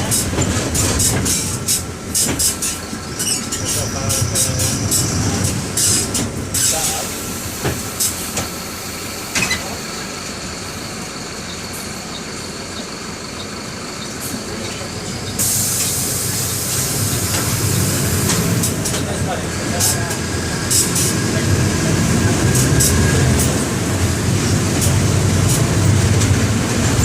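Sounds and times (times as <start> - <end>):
diesel bus engine running: 0.0 - 27.0
loud hiss: 15.4 - 18.8.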